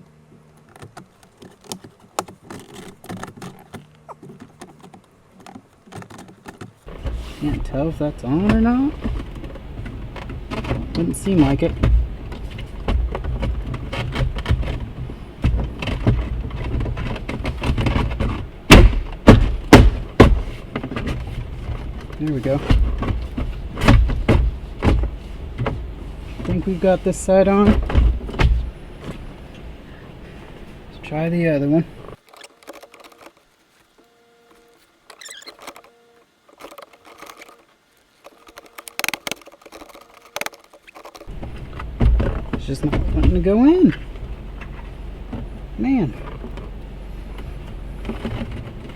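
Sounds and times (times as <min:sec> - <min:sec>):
plastic panel scraping: 0:00.0 - 0:48.9
loud sharp knocks on panel: 0:18.7 - 0:20.6
sharp plastic clicks: 0:35.0 - 0:43.4.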